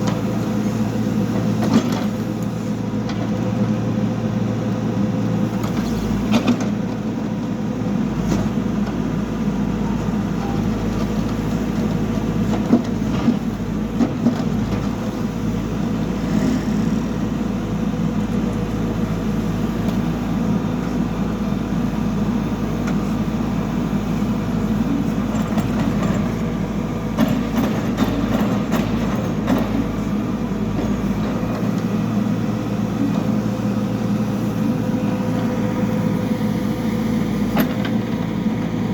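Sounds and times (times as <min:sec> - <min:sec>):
diesel engine running: 0:00.0 - 0:38.9
knocks and clanks of machinery: 0:27.1 - 0:30.0.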